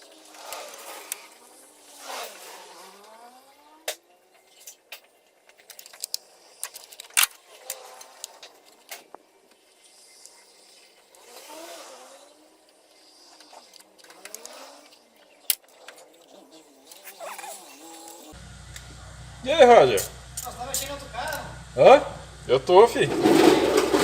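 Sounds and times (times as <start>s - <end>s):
vehicle passing by: 17.8s - 24.0s.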